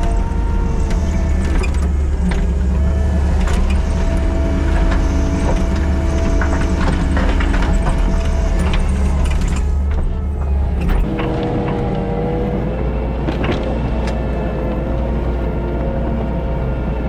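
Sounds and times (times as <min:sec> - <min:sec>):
machine clanks and knocks: 0:00.0 - 0:12.0
diesel engine under load: 0:00.0 - 0:17.0.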